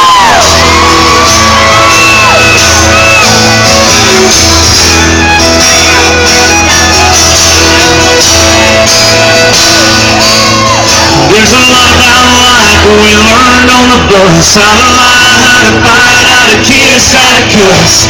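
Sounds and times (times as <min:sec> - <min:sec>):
crowd shouting and whooping: 0:00.0 - 0:17.9
live country band playing: 0:00.0 - 0:18.0.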